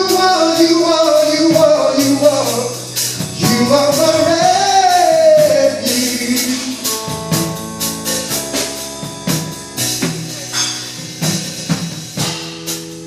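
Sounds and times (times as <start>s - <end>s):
drum kit hits: 0.0s - 13.0s
held keyboard chords: 0.0s - 13.0s.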